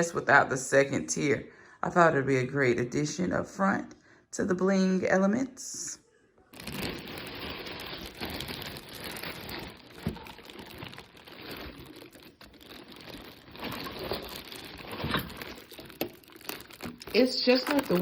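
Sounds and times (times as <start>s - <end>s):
packaging crinkling: 6.6s - 18.0s.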